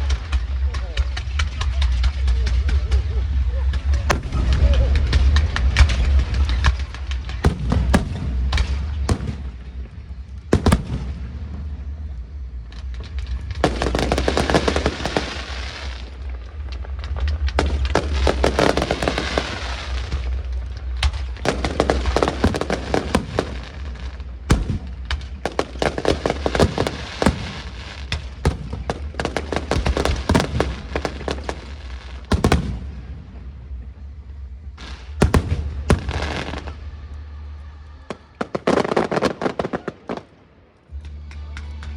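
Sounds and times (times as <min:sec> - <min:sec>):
low rumble: 0:00.0 - 0:38.7
fireworks bangs: 0:00.0 - 0:40.7
fireworks crackling and hissing: 0:00.0 - 0:41.9.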